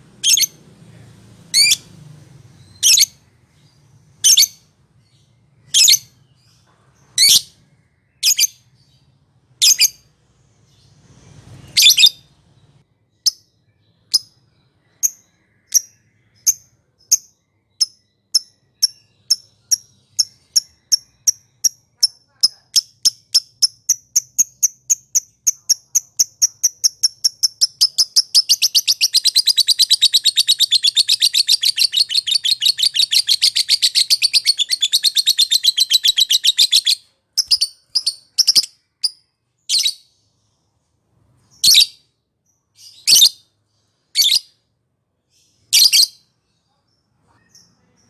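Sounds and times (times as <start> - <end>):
lovebird shrill calls: 26.9 - 38.7.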